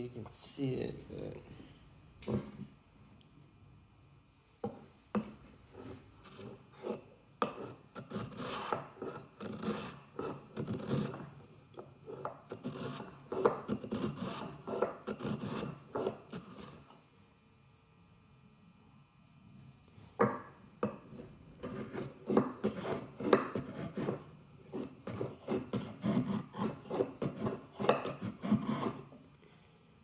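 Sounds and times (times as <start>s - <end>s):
hand plane rasping on wood: 5.8s - 11.3s, 12.0s - 16.8s, 21.6s - 29.1s.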